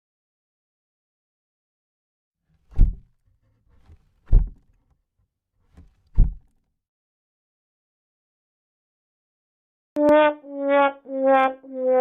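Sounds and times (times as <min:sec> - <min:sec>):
heavy deep thuds: 0:04.2 - 0:04.6, 0:06.1 - 0:06.4.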